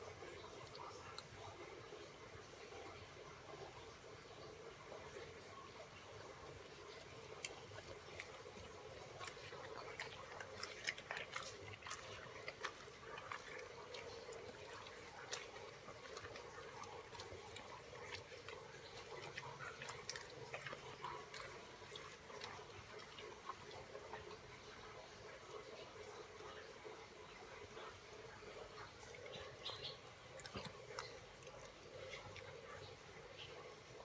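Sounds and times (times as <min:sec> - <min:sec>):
dog chewing: 0:06.3 - 0:26.6, 0:28.6 - 0:33.5.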